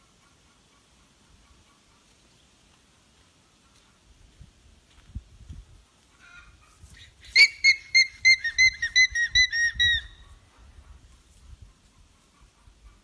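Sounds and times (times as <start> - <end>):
alpaca squealing: 7.3 - 10.3.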